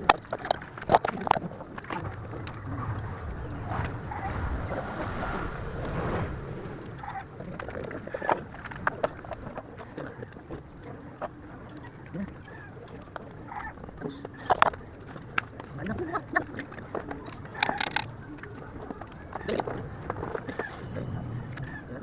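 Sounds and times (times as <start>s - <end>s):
steady rushing noise: 1.7s - 9.8s.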